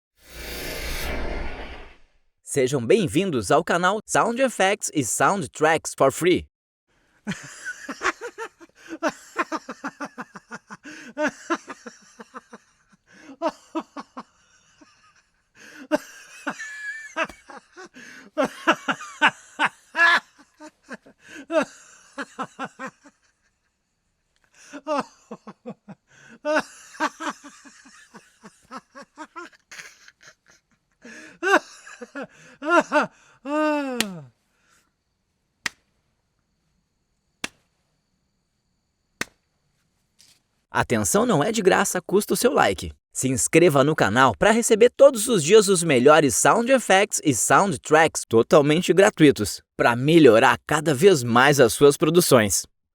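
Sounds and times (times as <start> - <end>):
man laughing heartily: 7.2 - 23.7, 24.6 - 34.3.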